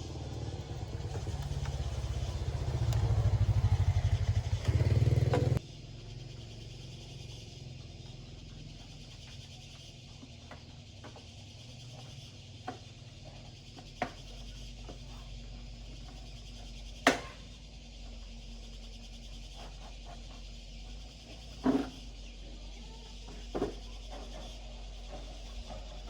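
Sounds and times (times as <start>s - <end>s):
low hum: 0.0s - 7.4s.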